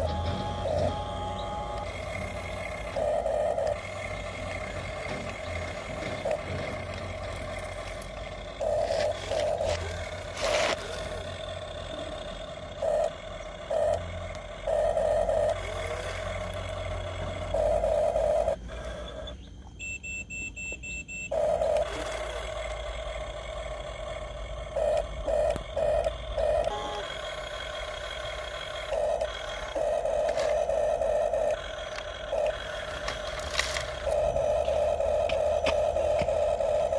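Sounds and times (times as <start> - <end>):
high electronic beeps: 0.0 - 4.9, 16.4 - 22.0, 24.2 - 27.2
small electric motors whining: 0.0 - 36.9.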